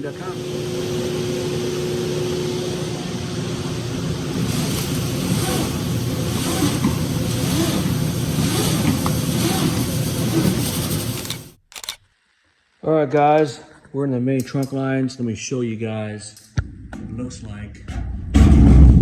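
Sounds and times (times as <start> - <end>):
duct-cleaning machine running: 0.0 - 11.6.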